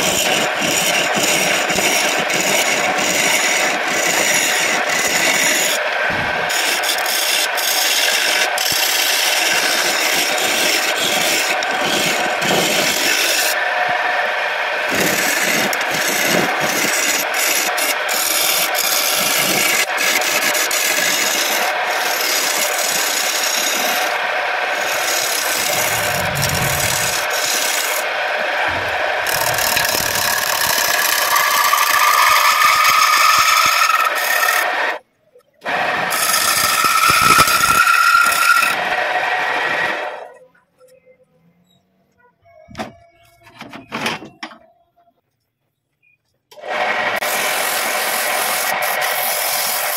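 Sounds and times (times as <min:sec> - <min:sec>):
wood lathe scraping hiss: 0:00.0 - 0:13.7, 0:14.9 - 0:34.7, 0:36.1 - 0:38.8, 0:47.2 - 0:49.9.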